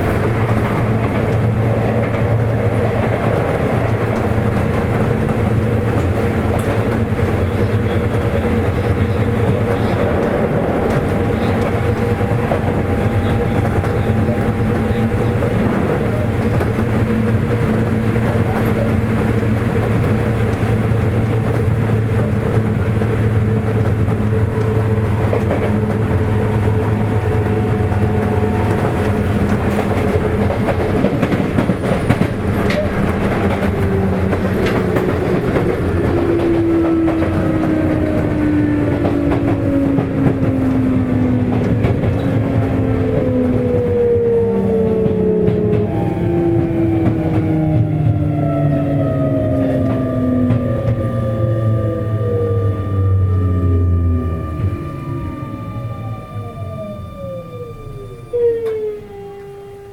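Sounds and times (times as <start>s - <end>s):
train motor hum: 0.0s - 59.9s
wheel and rail noise: 0.0s - 59.9s
motor whine dropping in pitch: 48.0s - 59.9s.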